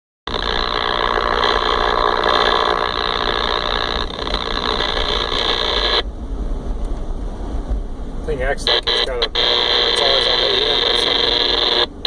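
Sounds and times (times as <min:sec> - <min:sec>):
radio speaker harsh noise: 0:00.3 - 0:06.1, 0:08.3 - 0:12.0.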